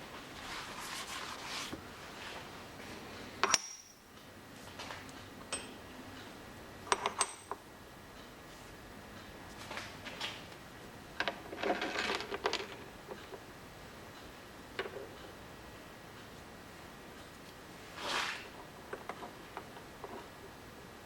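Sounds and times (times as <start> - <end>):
soft handling rustle: 0.2 - 3.2.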